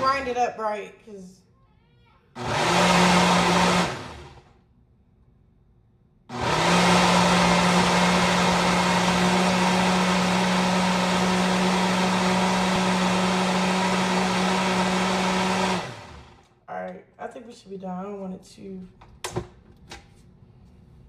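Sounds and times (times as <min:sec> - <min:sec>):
blender motor grinding: 0:02.4 - 0:04.6, 0:06.3 - 0:16.6.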